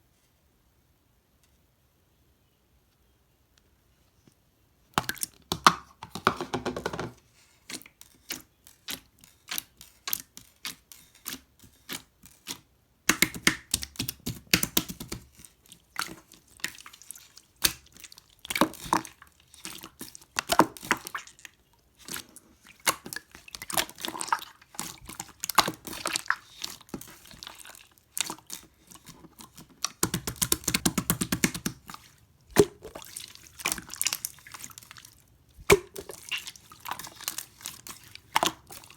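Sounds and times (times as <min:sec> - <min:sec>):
slime clicking and popping: 0:29.9 - 0:31.8.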